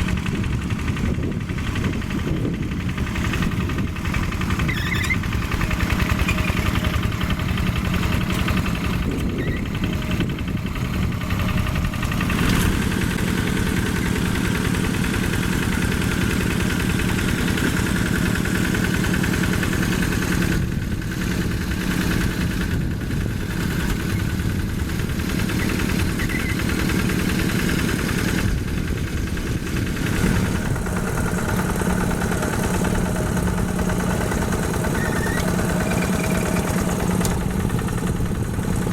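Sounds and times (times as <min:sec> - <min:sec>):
diesel engine chugging: 0:00.0 - 0:38.9.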